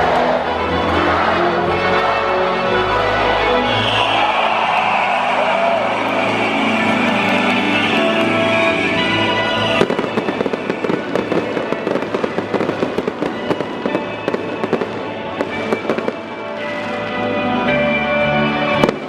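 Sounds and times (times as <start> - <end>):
stadium music: 0.0 - 19.0
fireworks crackling and popping: 6.0 - 17.3, 18.8 - 19.0.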